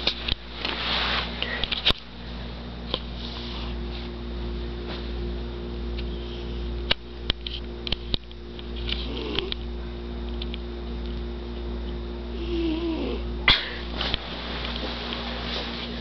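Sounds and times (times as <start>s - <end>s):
steady low hum: 0.0s - 16.0s
cat snoring: 9.0s - 9.5s, 12.3s - 13.2s.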